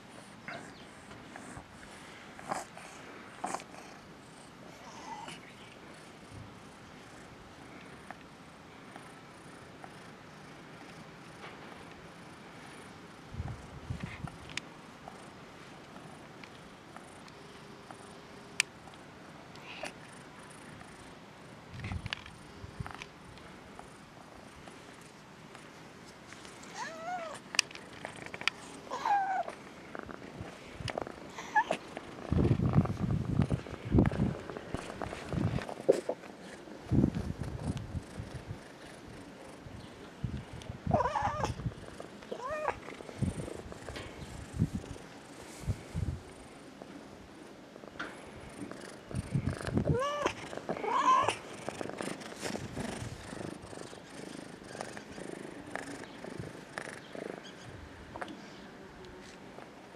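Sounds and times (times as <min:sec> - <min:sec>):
cat purring: 0:00.1 - 0:08.2, 0:26.5 - 0:47.2, 0:47.8 - 0:58.3
cat meowing: 0:40.9 - 0:41.6.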